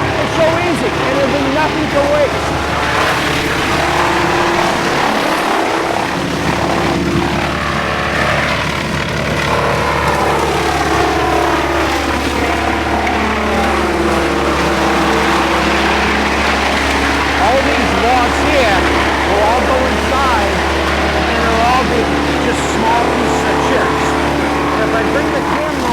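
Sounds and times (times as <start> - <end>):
wood chipper running: 0.0 - 25.9.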